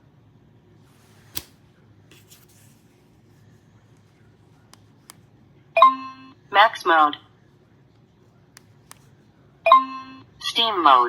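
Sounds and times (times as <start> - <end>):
faint low hum: 0.0 - 11.0.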